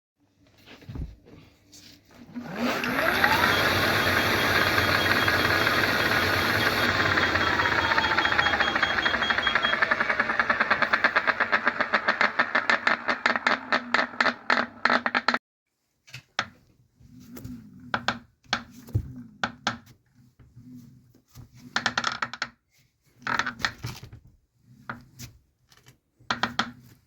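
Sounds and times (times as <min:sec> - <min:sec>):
low motor hum: 0:02.4 - 0:14.2
hub motor clicking: 0:02.5 - 0:15.3.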